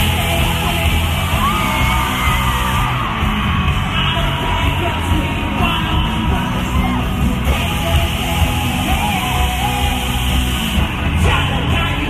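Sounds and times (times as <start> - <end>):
people yelling: 0.0 - 9.6
amplified live music with heavy bass: 0.0 - 12.0.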